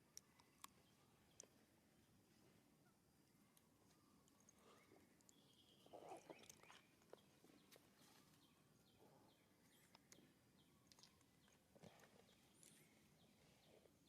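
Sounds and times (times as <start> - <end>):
faint high bird chirps: 2.8 - 14.0.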